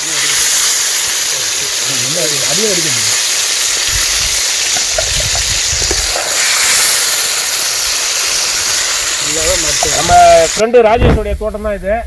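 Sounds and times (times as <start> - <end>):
berries sizzling in hot oil: 0.0 - 10.8
low rumbles: 10.9 - 11.8.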